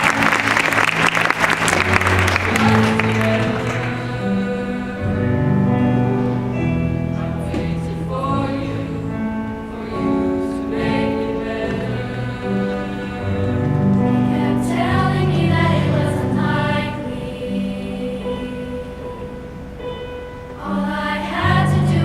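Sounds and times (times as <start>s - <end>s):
applause: 0.0s - 4.0s
choir singing held chords: 0.0s - 22.0s.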